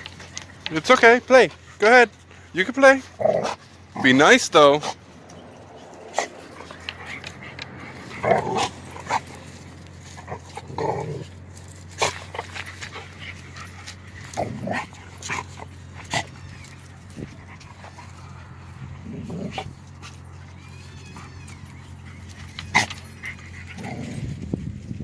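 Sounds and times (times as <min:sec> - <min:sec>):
scuffling clicks: 0:00.0 - 0:04.0, 0:04.6 - 0:24.4
puppies making short vocal noises: 0:04.8 - 0:24.4.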